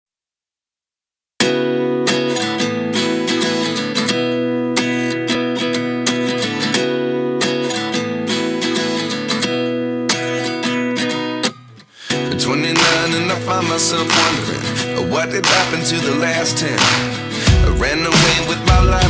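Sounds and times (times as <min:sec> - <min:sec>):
strummed acoustic guitar: 0:01.4 - 0:19.0.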